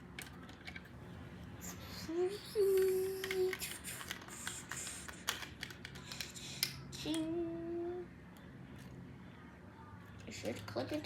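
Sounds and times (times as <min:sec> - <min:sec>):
plastic bricks clicking and clattering: 0:00.0 - 0:00.9, 0:02.6 - 0:07.2
child humming: 0:01.6 - 0:05.0.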